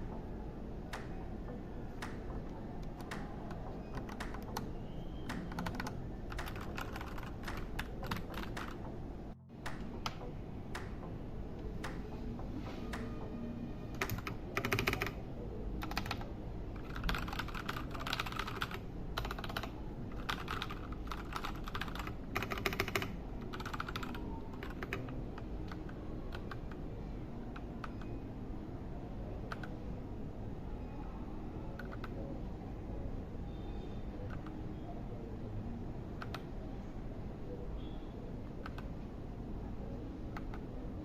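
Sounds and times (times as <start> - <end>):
mechanical keyboard typing: 1.9 - 8.9, 13.9 - 15.2, 15.8 - 26.8, 29.5 - 29.8, 31.8 - 32.2, 36.2 - 36.5.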